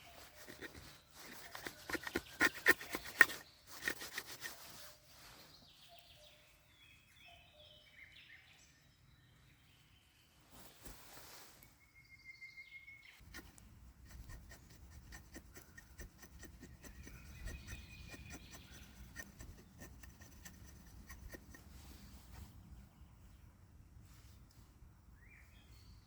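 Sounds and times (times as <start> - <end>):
faint clicking and scraping: 0.0 - 4.7
forest ambience: 0.0 - 26.0.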